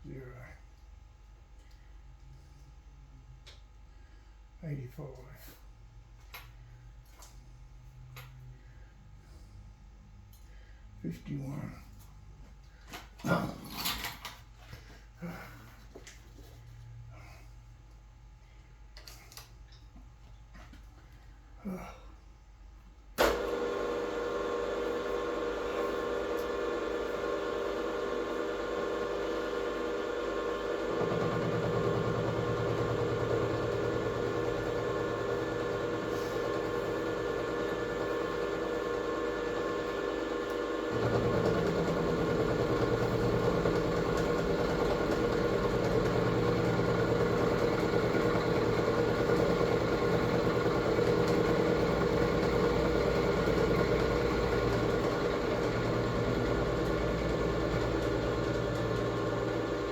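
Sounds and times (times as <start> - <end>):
electric machine whining: 23.2 - 59.9.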